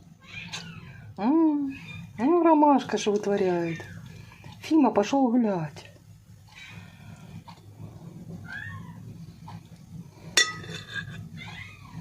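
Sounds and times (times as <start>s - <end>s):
cat meowing: 8.4s - 9.0s.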